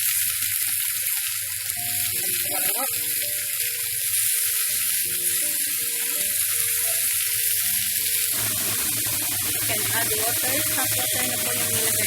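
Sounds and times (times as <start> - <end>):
chicken sizzling in hot oil: 0.0 - 12.0.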